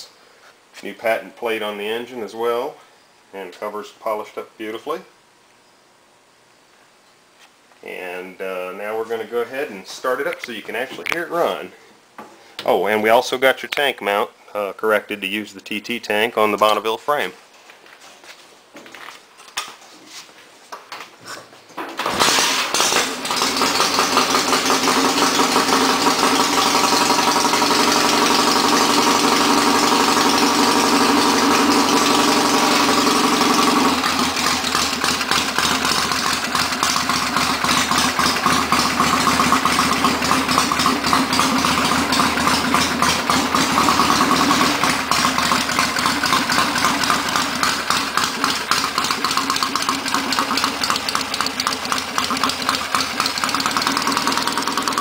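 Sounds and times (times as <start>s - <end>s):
motorcycle engine idling: 23.1s - 55.0s.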